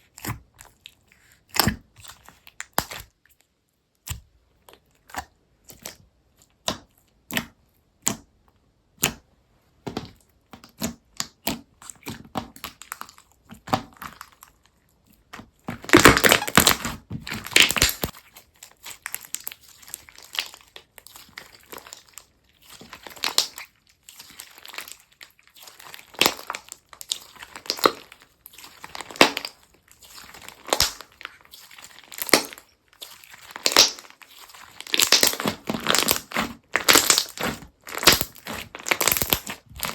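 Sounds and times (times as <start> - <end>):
slime squeezed by hand crackling: 15.8 - 39.9.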